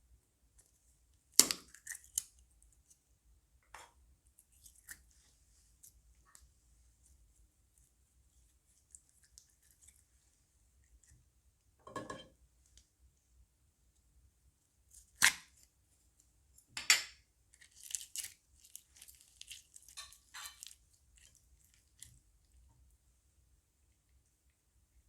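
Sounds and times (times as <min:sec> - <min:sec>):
crunchy slime crackling: 0:17.6 - 0:22.2.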